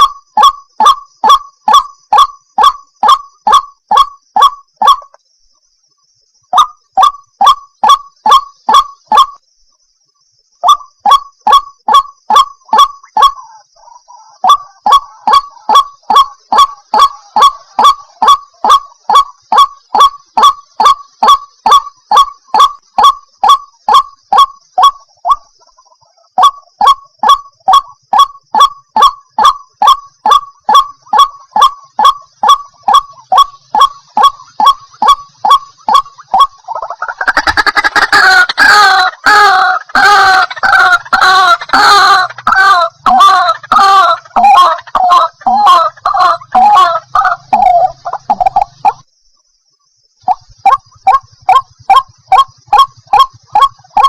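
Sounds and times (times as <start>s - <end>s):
waterhen honking calls: 10.6s - 25.4s, 26.4s - 49.0s.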